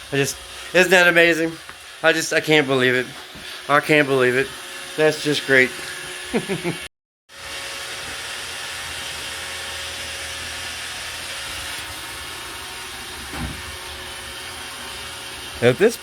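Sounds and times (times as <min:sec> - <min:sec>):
robot vacuum whirring: 0:00.1 - 0:06.8.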